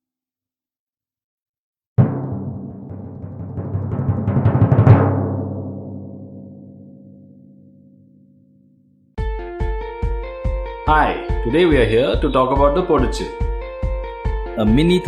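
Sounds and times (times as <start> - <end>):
drum roll: 2.0 - 6.5
drum hit: 2.0 - 6.9.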